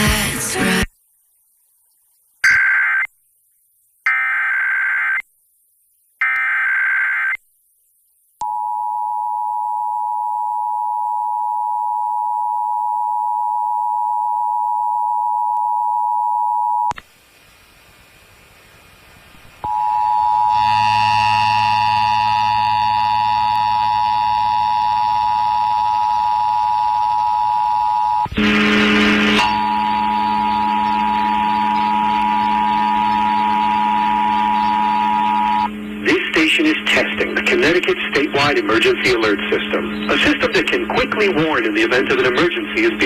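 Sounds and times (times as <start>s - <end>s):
radio hiss: 16.9s - 43.0s
digital data screeching bursts: 29.3s - 43.0s.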